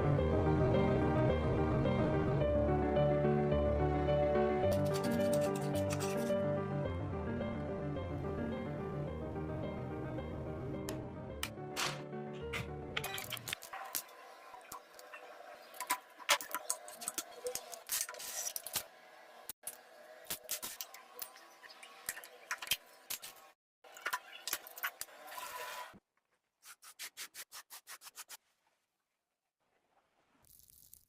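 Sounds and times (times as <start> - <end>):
rapid scraping strokes: 4.7 - 6.4.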